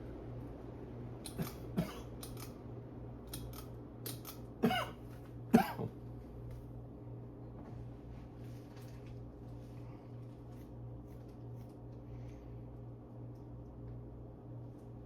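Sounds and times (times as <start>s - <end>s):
ceiling fan motor humming: 0.0s - 15.0s.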